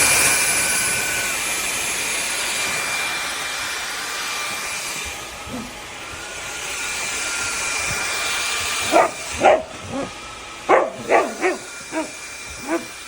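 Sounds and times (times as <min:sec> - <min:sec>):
vacuum cleaner motor whining: 0:00.0 - 0:13.0
dog barking: 0:08.8 - 0:13.0.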